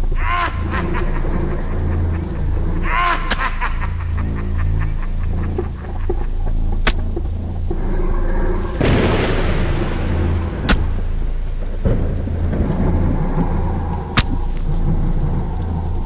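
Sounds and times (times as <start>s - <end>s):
steady low rumble: 0.0s - 16.0s
sharp cracks: 0.5s - 5.7s, 6.7s - 7.8s, 8.6s - 16.0s
sudden crash: 8.7s - 15.1s.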